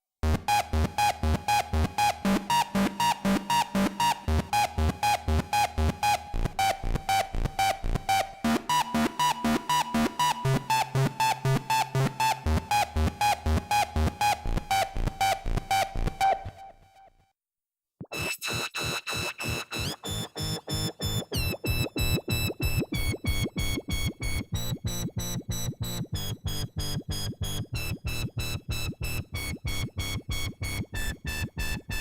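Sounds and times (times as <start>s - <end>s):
fast sequenced synth notes: 0.2s - 16.1s, 18.1s - 32.0s
synth bass line: 18.1s - 32.0s.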